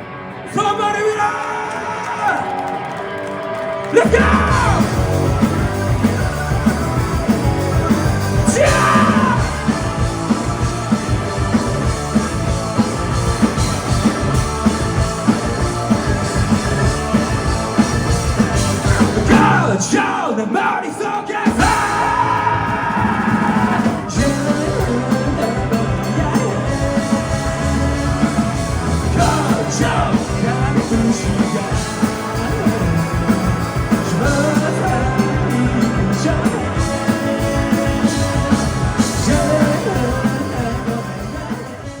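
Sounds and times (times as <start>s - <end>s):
drums: 0.0s - 42.0s
rock band playing live: 0.0s - 42.0s
person singing: 3.9s - 6.2s, 8.0s - 10.4s, 18.9s - 42.0s.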